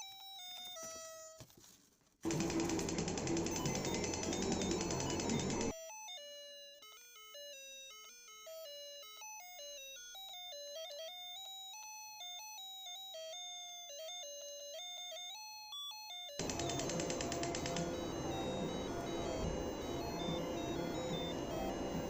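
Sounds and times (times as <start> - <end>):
electronic beeping tune: 16.4 - 22.0.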